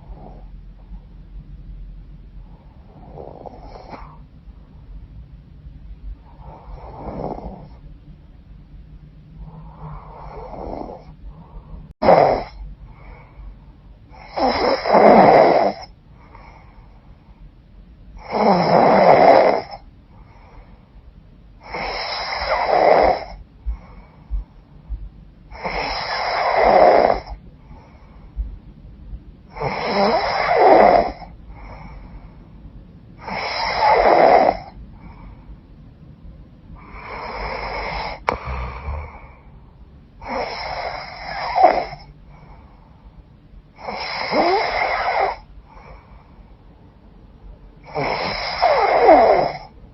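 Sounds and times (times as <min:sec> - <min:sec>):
faint breaths: 0:00.0 - 0:49.9
woman snoring: 0:02.8 - 0:04.2, 0:06.4 - 0:07.8, 0:09.4 - 0:12.6, 0:14.2 - 0:15.9, 0:18.2 - 0:19.8, 0:21.6 - 0:23.4, 0:25.6 - 0:27.4, 0:29.5 - 0:31.3, 0:33.2 - 0:34.8, 0:36.8 - 0:39.5, 0:40.2 - 0:42.1, 0:43.8 - 0:45.5, 0:47.8 - 0:49.7.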